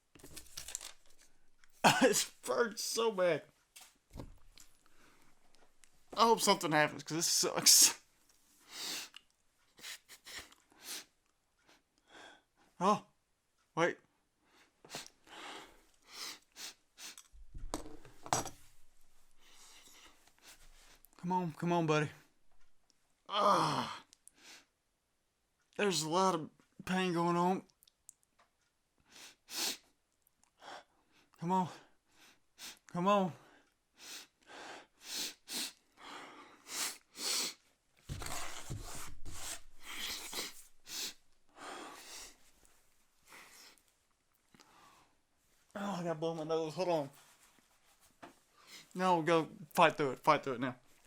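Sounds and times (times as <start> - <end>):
man sniffing and breathing raggedly: 19.4 - 21.1, 30.6 - 37.7, 39.4 - 42.6, 43.2 - 43.8
man sniffing: 39.4 - 42.5
man breathing hard: 39.8 - 42.4.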